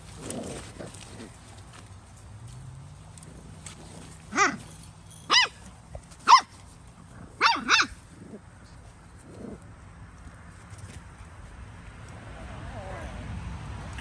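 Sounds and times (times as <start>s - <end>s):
puppy yipping: 4.3s - 6.6s, 7.4s - 8.0s.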